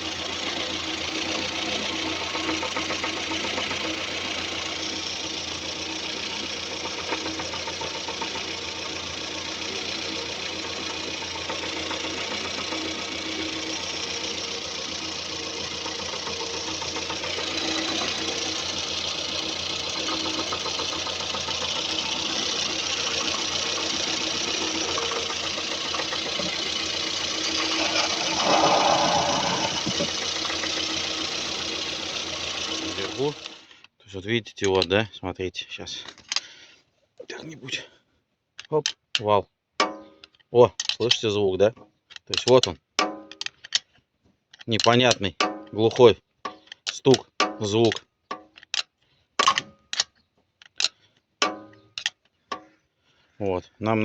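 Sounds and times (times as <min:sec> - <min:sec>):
rapid engine ticking knock: 0:00.0 - 0:33.6
car engine idling: 0:00.0 - 0:33.7.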